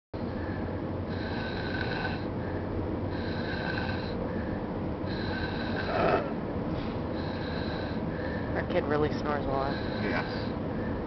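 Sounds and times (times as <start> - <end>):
child snoring: 1.1 - 2.3, 3.1 - 4.2, 5.1 - 6.4, 7.1 - 8.0, 9.6 - 10.6.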